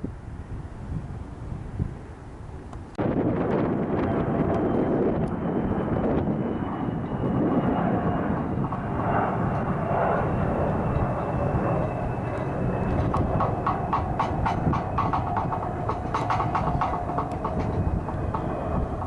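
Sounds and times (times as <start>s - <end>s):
wind on microphone: 0.0s - 19.0s
jet engines whining: 1.2s - 19.0s
rapid rattling clatter: 13.0s - 19.0s.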